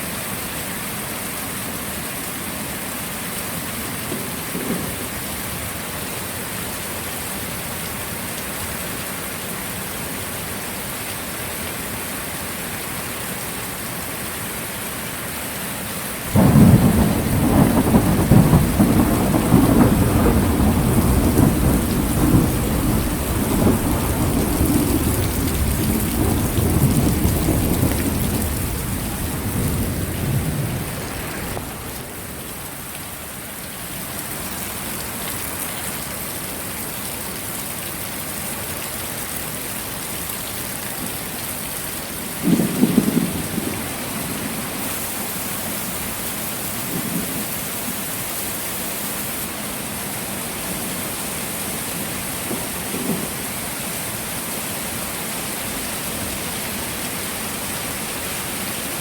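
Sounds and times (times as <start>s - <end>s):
heavy rain: 0.0s - 59.0s
thunder rumble: 16.3s - 32.6s, 42.4s - 45.1s.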